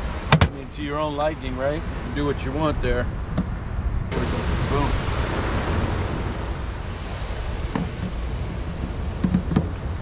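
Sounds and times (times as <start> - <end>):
surf: 0.0 - 10.0
wind on microphone: 0.0 - 10.0
plastic clicks and knocks: 9.2 - 9.8.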